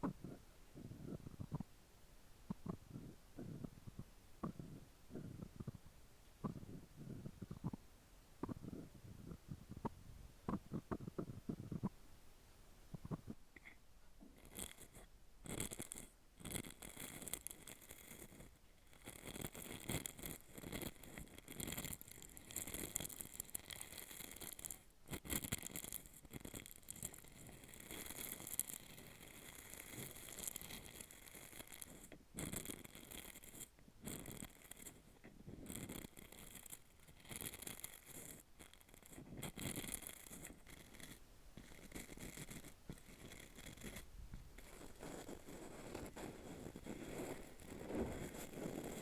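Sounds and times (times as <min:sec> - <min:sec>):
scraping on hollow capsule: 0:13.0 - 0:49.0.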